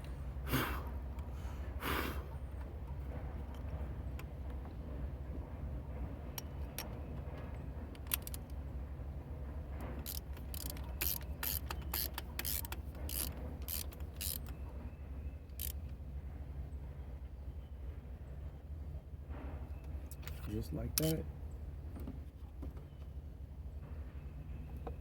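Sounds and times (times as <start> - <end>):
ratchet wrench clicking: 8.0 - 8.4, 10.0 - 14.5, 15.6 - 15.8, 21.0 - 21.2.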